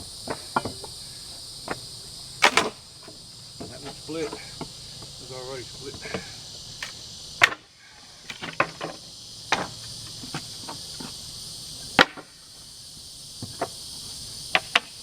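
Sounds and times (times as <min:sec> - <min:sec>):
insects chirring: 0:00.0 - 0:15.0
wooden pallet boards cracking: 0:02.4 - 0:03.2, 0:06.8 - 0:10.5.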